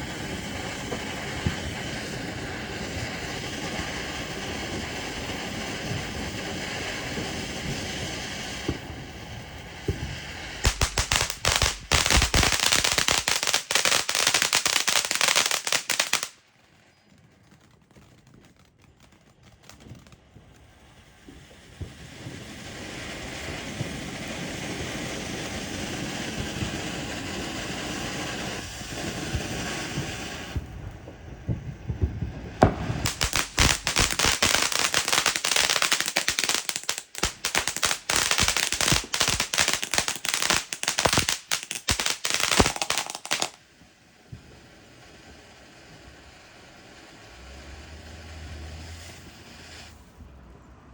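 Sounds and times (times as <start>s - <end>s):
steady hiss: 0.0s - 16.4s, 32.6s - 50.5s
firecrackers crackling: 0.0s - 50.9s.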